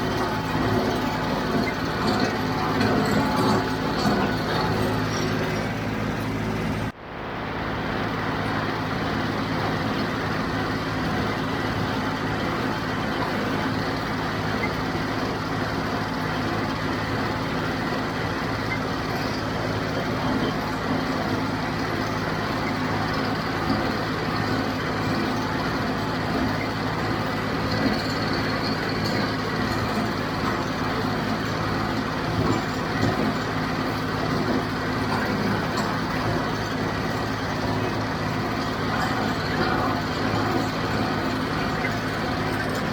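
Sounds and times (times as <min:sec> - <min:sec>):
diesel tractor engine running: 0:00.0 - 0:42.9.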